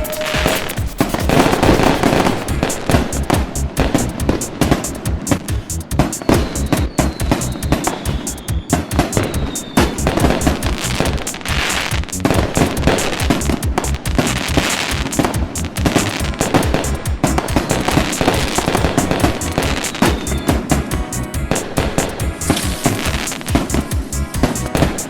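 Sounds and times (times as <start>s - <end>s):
fireworks crackling bangs: 0.0s - 25.0s
music with steady beat: 0.0s - 25.0s.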